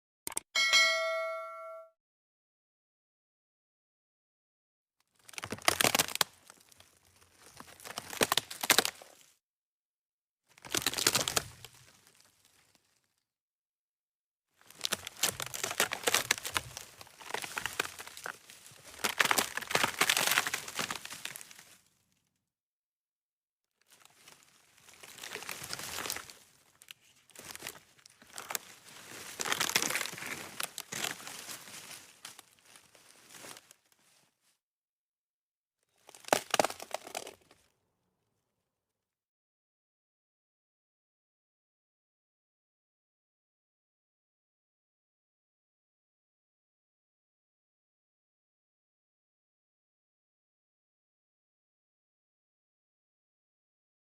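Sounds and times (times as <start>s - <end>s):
wood breaking and splintering: 5.2s - 9.3s, 10.6s - 11.4s, 14.7s - 21.7s, 24.0s - 26.5s, 27.4s - 31.7s, 36.1s - 37.6s.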